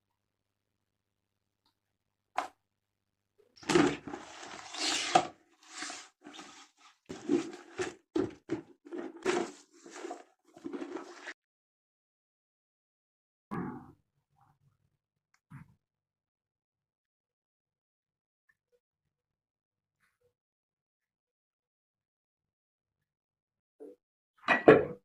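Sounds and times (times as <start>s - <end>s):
kitchen scrapes and knocks: 3.6s - 11.4s.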